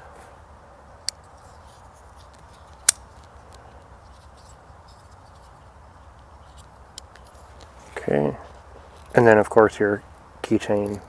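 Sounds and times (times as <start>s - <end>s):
faint steady hiss: 0.0s - 11.0s.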